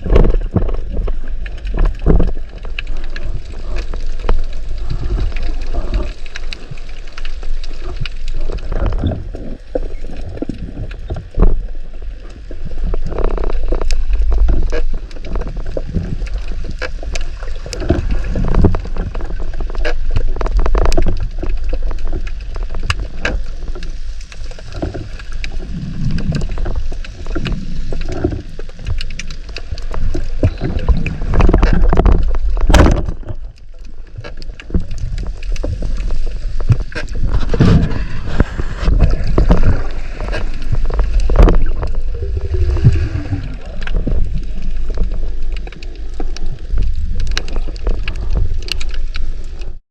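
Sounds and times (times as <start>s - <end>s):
water sloshing and gurgling: 0.0s - 49.8s
low rumble: 35.2s - 48.6s.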